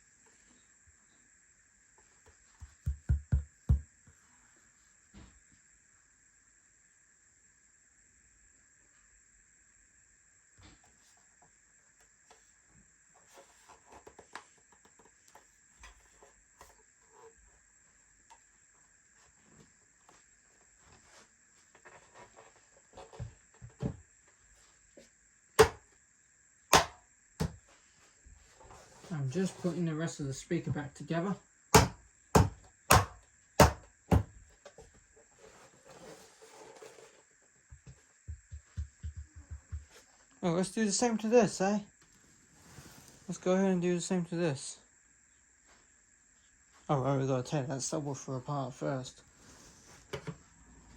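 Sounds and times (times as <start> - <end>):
faint handling and scraping: 12.0 - 17.6, 18.3 - 25.2, 27.6 - 30.0, 34.8 - 37.4, 42.0 - 43.4, 49.2 - 50.6
sharp knocks: 31.8 - 34.3.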